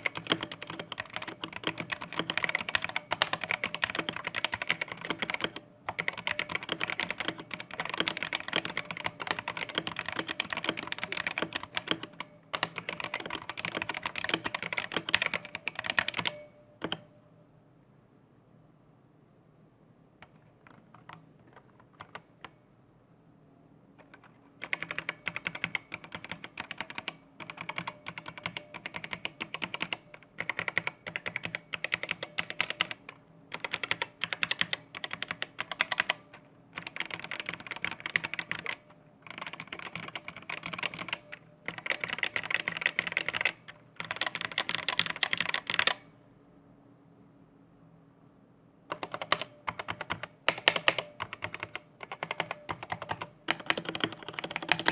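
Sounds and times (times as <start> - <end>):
keyboard keys clicking: 0.0 - 17.1, 20.2 - 22.6, 24.0 - 46.0, 48.9 - 54.9.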